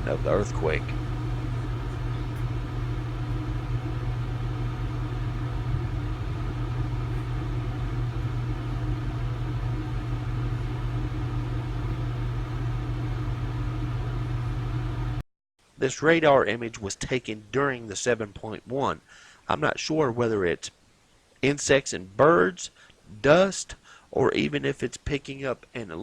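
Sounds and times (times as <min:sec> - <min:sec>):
steady low hum: 0:00.0 - 0:15.2.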